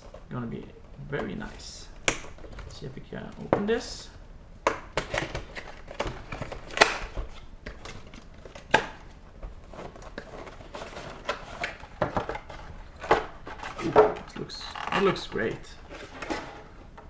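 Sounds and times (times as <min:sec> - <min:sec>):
cardboard and plastic crinkling: 0:05.0 - 0:16.6.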